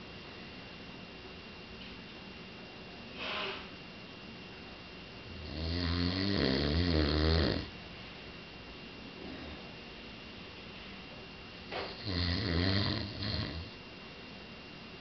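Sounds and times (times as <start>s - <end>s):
man snoring: 5.3s - 7.7s, 11.9s - 13.8s.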